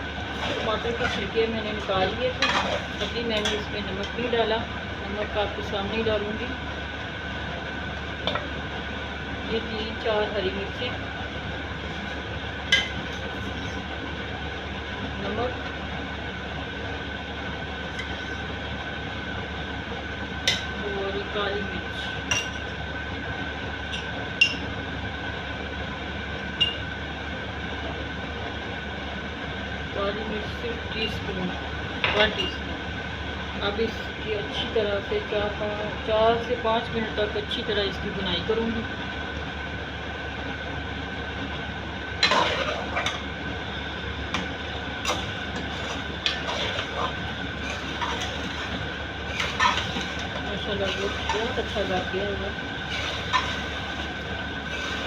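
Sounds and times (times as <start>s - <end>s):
thin steady whine: 0.0s - 55.0s
metal spoon scraping a pan: 0.3s - 1.4s, 2.4s - 3.7s, 42.2s - 43.2s, 44.4s - 52.2s, 52.8s - 55.0s
meat sizzling: 43.6s - 55.0s.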